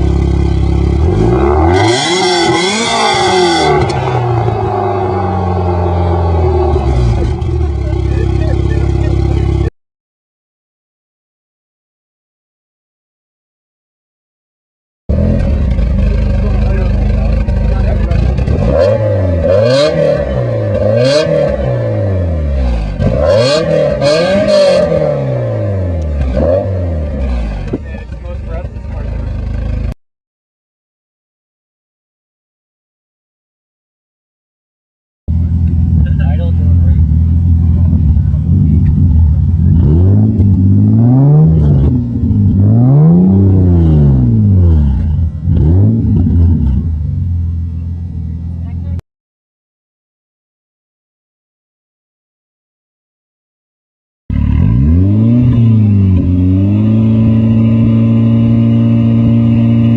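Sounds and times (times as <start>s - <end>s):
car engine revving: 0.0s - 9.7s, 15.1s - 30.0s, 35.3s - 49.0s, 54.3s - 59.9s.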